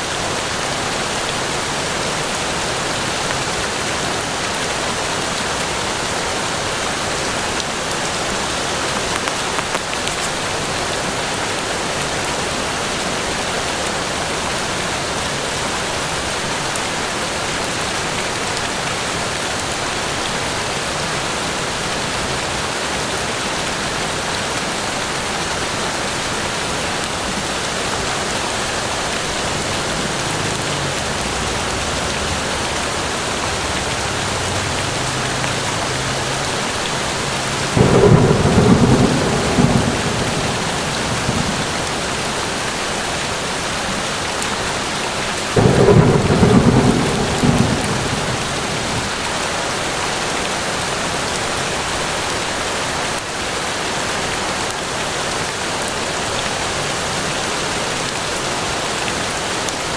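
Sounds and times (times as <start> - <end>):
steady rain falling: 0.0 - 59.9
thunder rolling: 29.2 - 42.8, 45.6 - 49.4.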